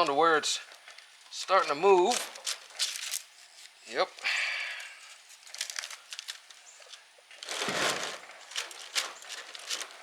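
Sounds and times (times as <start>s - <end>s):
copper wire crinkling and scraping: 0.7s - 4.0s, 4.8s - 10.0s.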